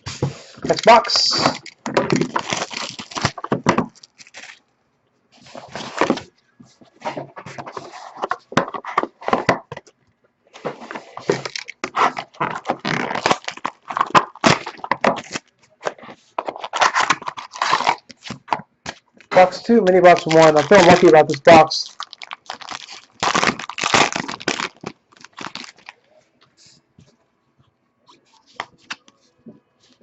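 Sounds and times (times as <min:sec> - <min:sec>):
packaging and cards rustling: 0:00.1 - 0:04.7, 0:05.4 - 0:10.0, 0:10.6 - 0:26.1.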